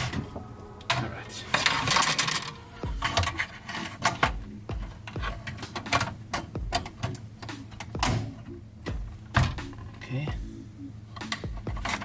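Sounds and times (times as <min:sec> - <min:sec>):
low thumps: 0:00.0 - 0:03.6, 0:04.2 - 0:05.9, 0:06.5 - 0:12.0
computer parts clicking and rattling: 0:01.5 - 0:10.2.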